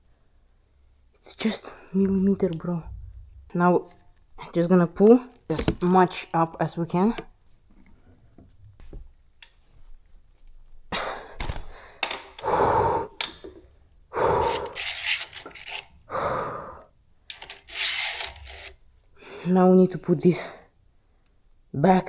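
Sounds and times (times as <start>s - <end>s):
wiring rubbing and scraping: 3.6s - 8.0s, 14.2s - 16.1s, 17.3s - 18.8s.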